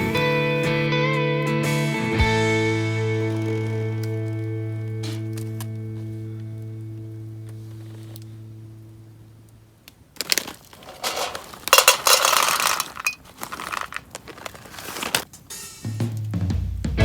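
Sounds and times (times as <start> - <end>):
background music: 0.0 - 6.2
gear clinking and clattering: 10.2 - 15.3.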